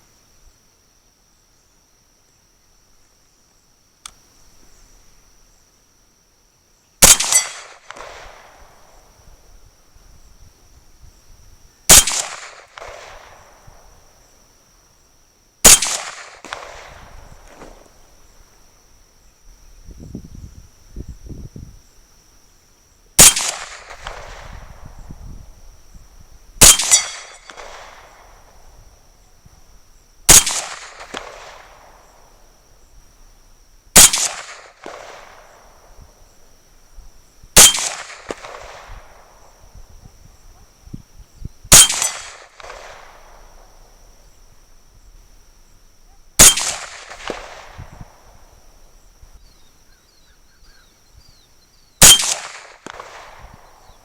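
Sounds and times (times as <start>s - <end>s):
insect chirring: 0.0s - 54.0s
rifle shots echoing: 7.0s - 8.9s, 11.9s - 13.8s, 15.6s - 18.0s, 23.2s - 24.5s, 26.6s - 28.6s, 30.3s - 32.3s, 34.0s - 35.9s, 37.6s - 39.4s, 41.7s - 43.6s, 46.4s - 48.4s, 52.0s - 54.0s.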